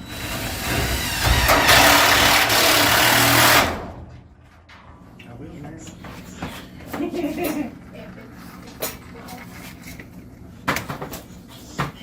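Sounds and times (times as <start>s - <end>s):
power drill driving screw into metal: 0.2s - 3.8s.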